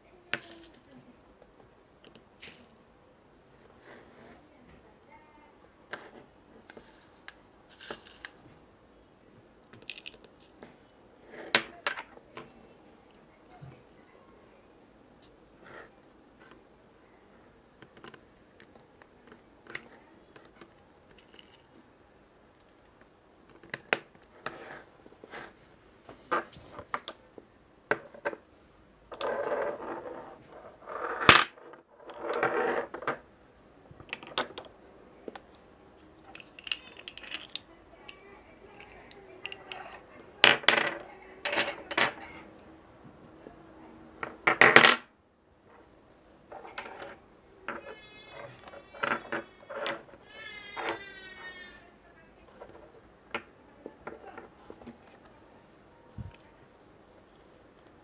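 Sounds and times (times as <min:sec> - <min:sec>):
beads clicking and clattering: 0:06.8 - 0:08.4, 0:36.2 - 0:38.2
beads rattling and pouring: 0:06.8 - 0:08.4.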